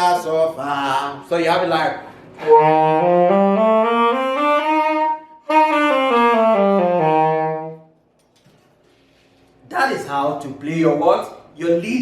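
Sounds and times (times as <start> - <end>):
saxophone playing a scale: 2.3 - 8.0.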